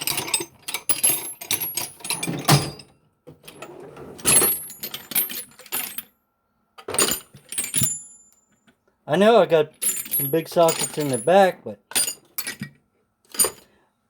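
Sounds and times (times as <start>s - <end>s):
metal tools clinking and rattling: 0.0s - 2.9s, 3.5s - 6.1s, 6.8s - 8.2s, 9.7s - 13.7s.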